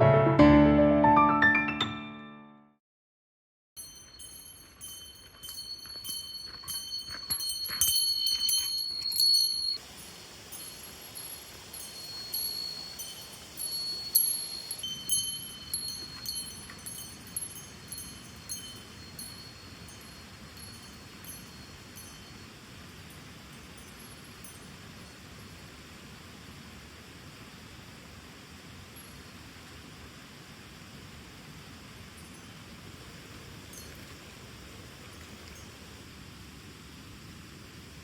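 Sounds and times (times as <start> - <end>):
high chime tones: 1.2 - 2.6, 3.8 - 9.8
faint steady hiss: 3.8 - 38.0.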